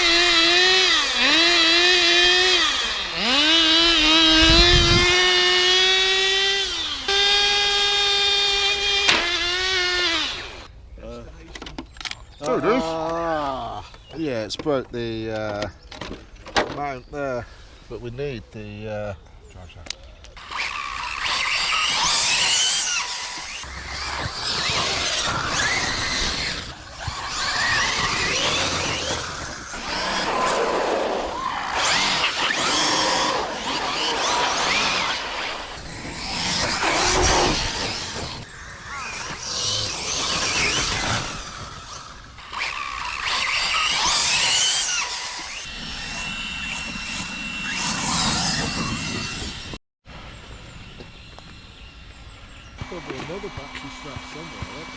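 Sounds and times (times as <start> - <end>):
toy car motor whine: 0.0 - 10.7, 20.4 - 49.8, 50.9 - 54.9.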